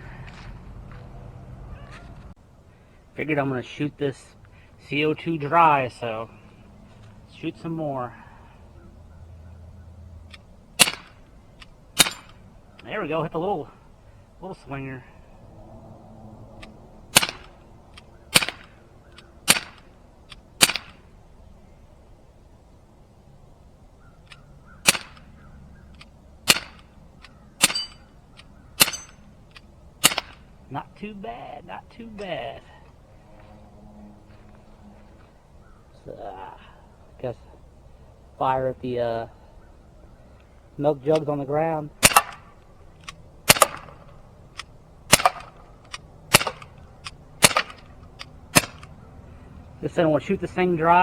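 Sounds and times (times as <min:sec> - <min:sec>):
bb pistol shots: 0:10.8 - 0:11.2, 0:11.9 - 0:12.4, 0:17.1 - 0:17.6, 0:18.3 - 0:21.1, 0:24.8 - 0:25.3, 0:26.4 - 0:26.9, 0:27.6 - 0:28.1, 0:28.8 - 0:29.2, 0:30.0 - 0:30.5, 0:42.0 - 0:44.2, 0:45.1 - 0:45.7, 0:46.3 - 0:48.9.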